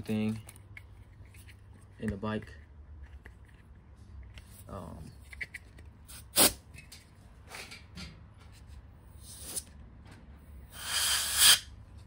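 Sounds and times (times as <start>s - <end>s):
spray can hissing: 10.8s - 11.6s.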